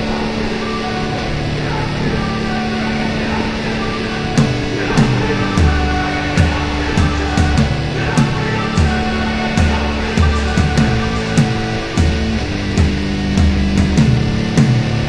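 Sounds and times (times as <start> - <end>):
sustained electric guitar: 0.0 - 15.0
bass line: 1.0 - 15.0
drum hits: 4.4 - 14.9.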